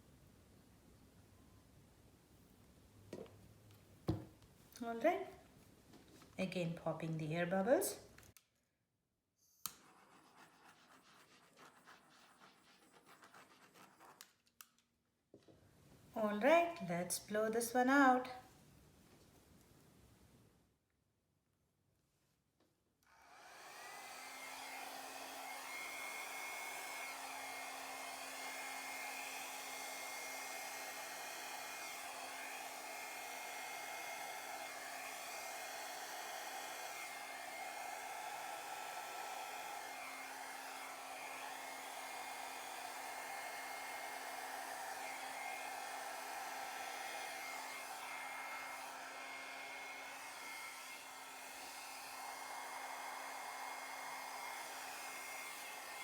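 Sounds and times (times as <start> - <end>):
hairdryer running with faint whine: 4.1 - 5.4, 23.1 - 56.0.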